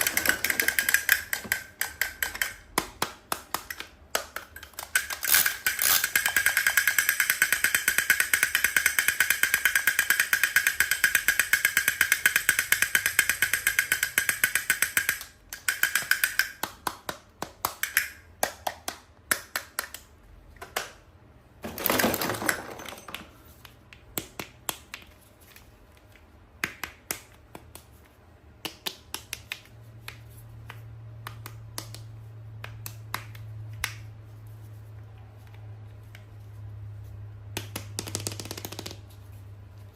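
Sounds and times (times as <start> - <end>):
toy ratchet clicking: 0.0 - 2.6, 4.6 - 16.6
taps and clicks: 0.0 - 5.2.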